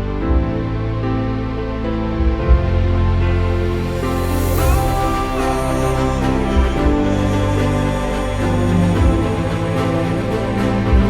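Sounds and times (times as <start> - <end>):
slow chords over bass line: 0.0 - 11.0
soft low beat: 2.2 - 3.1.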